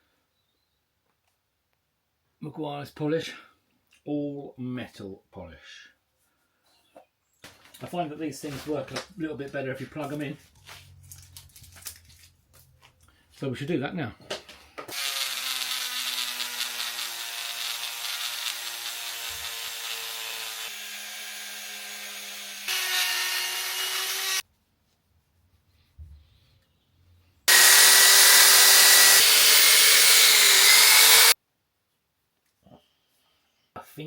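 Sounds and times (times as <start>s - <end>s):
power tool buffing metal: 14.9s - 24.4s, 27.5s - 31.4s.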